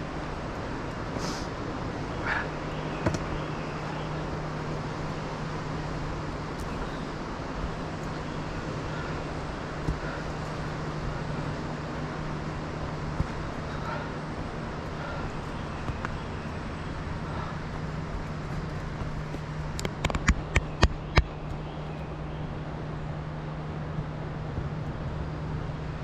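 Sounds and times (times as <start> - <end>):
sharp knocks: 3.0 - 3.3.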